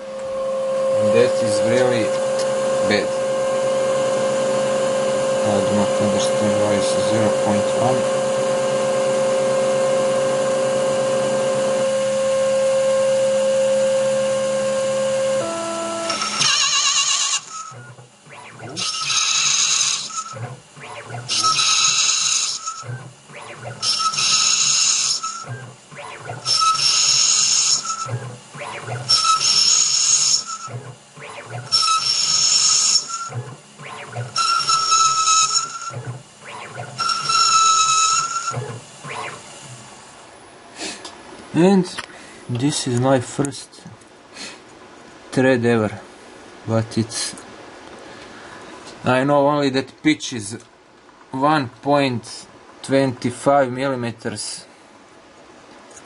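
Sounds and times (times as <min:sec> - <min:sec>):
lathe motors whining: 0:00.0 - 0:40.4
machine whirring: 0:00.0 - 0:40.4.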